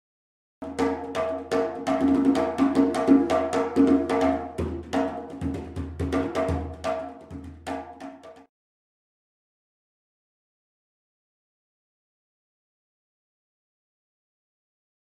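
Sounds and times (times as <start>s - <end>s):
percussion music: 0.6s - 8.5s.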